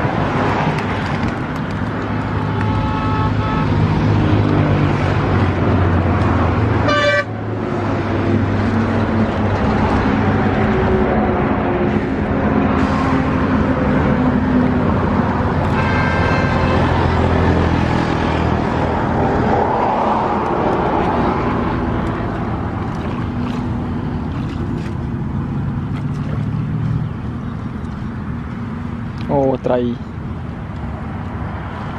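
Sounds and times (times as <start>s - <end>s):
high horn-like tone: 2.4s - 4.0s, 6.8s - 7.4s, 15.6s - 17.5s.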